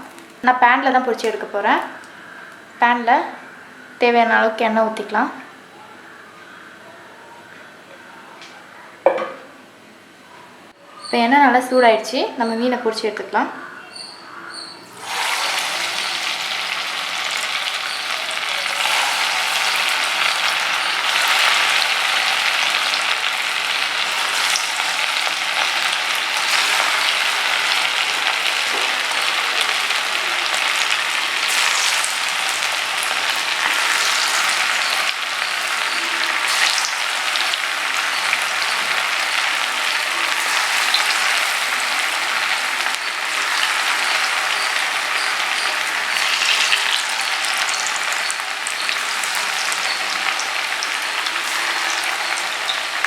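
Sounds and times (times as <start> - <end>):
fish frying in hot oil: 14.8 - 53.0.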